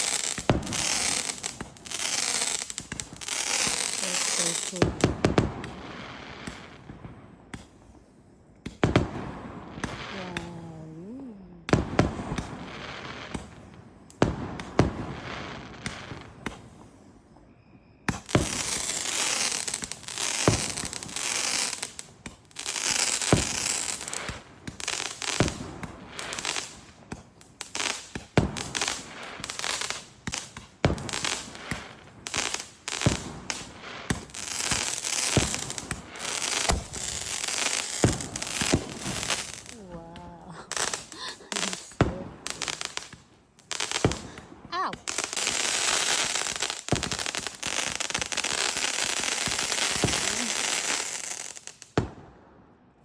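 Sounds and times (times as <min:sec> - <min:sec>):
fireworks booming: 0:00.0 - 0:08.0, 0:08.6 - 0:17.0, 0:18.0 - 0:52.6
fireworks crackling: 0:00.0 - 0:17.4, 0:18.0 - 0:52.5.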